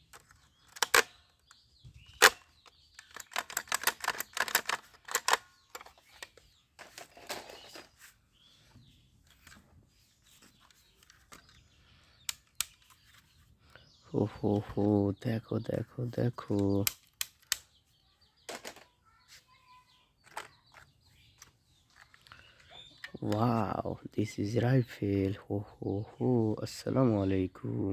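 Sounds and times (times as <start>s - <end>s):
toy gun plastic clicks: 0.1s - 1.6s, 2.2s - 7.0s, 12.2s - 13.0s, 16.5s - 17.8s, 18.5s - 18.9s, 20.2s - 22.4s.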